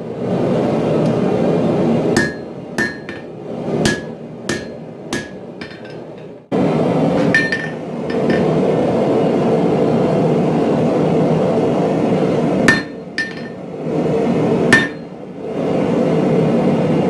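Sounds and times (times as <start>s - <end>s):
hammer striking steel on anvil: 2.2s - 6.3s, 7.2s - 8.6s, 12.7s - 13.6s, 14.7s - 15.1s.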